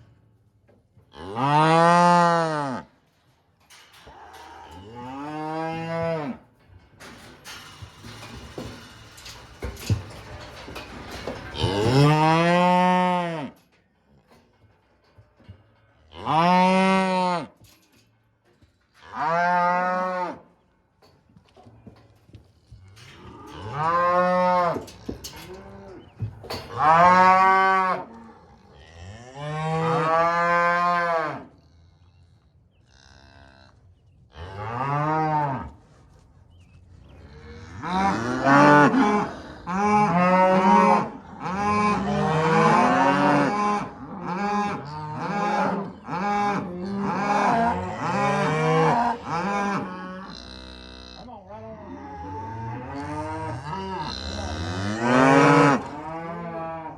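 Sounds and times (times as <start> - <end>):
cattle mooing: 1.1 - 2.9, 3.8 - 6.5, 11.0 - 13.7, 16.0 - 17.5, 22.8 - 32.1, 37.3 - 56.9.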